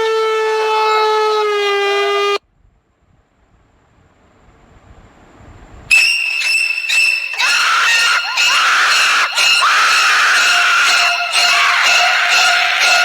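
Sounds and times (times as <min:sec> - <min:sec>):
high steady tones: 0:05.9 - 0:13.0
wailing cries: 0:05.9 - 0:13.0.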